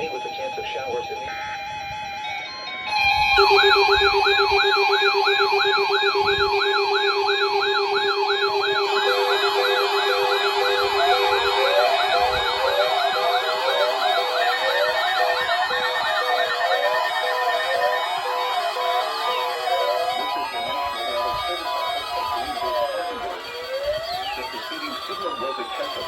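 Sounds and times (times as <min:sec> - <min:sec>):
fast warbling siren sweeps: 0:01.9 - 0:26.0
alarm with slower sweeps: 0:02.1 - 0:26.0
pulsing low tone: 0:03.0 - 0:16.2.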